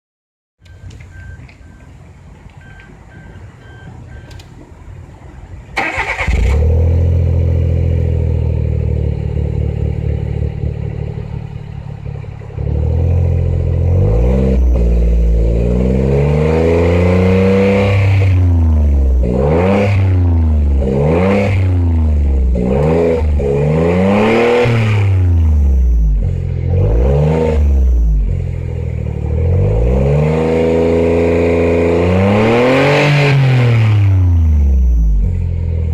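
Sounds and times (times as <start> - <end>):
short beeps: 0.6 - 2.0, 2.6 - 4.4, 13.7 - 16.0, 24.1 - 29.8, 34.1 - 35.5
car engine starting and revving: 2.6 - 35.9.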